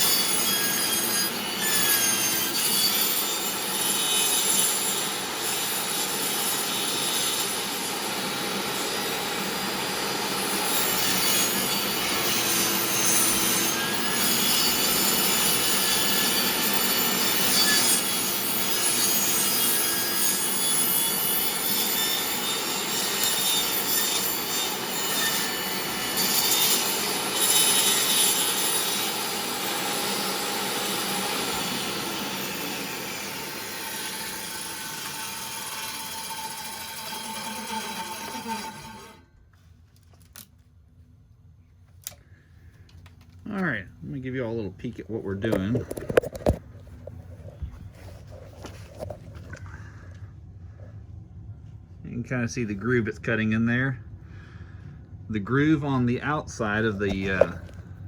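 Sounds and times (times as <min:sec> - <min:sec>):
table saw cutting wood: 0:00.0 - 0:39.2.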